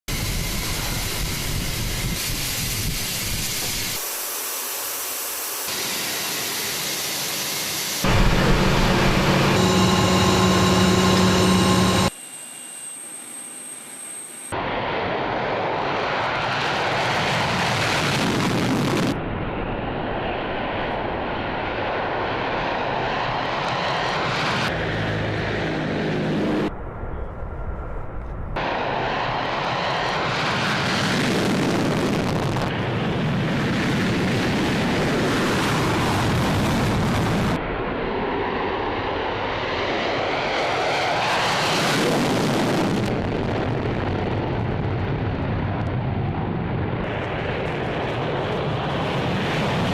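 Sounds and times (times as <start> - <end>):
military aircraft engines roaring: 0.1 - 49.9
droning pitched hum: 8.0 - 14.7.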